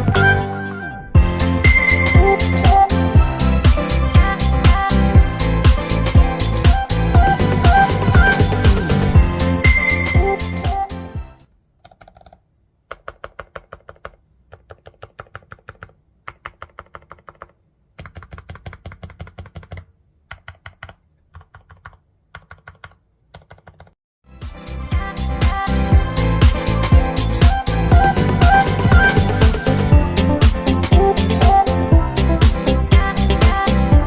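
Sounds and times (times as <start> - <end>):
background music: 0.0 - 11.5, 24.3 - 34.0
keyboard typing: 6.4 - 9.1, 11.8 - 24.0.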